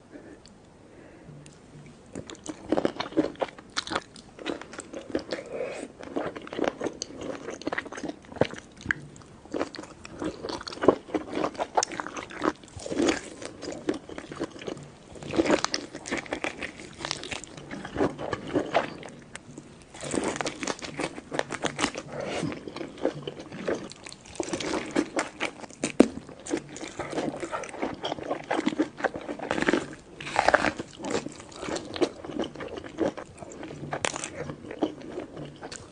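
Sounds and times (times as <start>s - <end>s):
chewing crunchy food: 1.5s - 35.9s.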